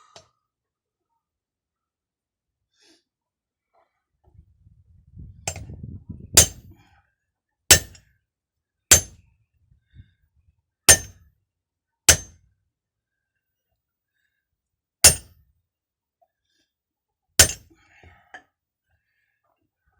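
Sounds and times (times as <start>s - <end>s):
hammer striking metal: 6.4s - 6.6s, 7.7s - 8.0s, 8.9s - 9.2s, 10.9s - 11.2s, 12.1s - 12.4s, 15.0s - 15.3s, 17.4s - 17.6s.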